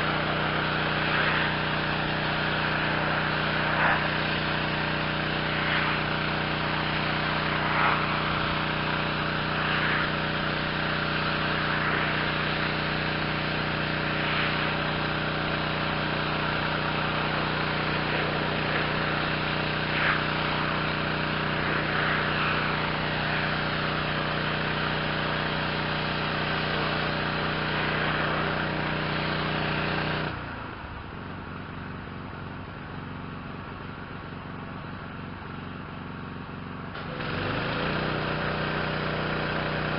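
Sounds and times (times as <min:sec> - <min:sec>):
water spray hissing: 0:00.0 - 0:30.0
pressure washer engine droning: 0:00.0 - 0:39.9.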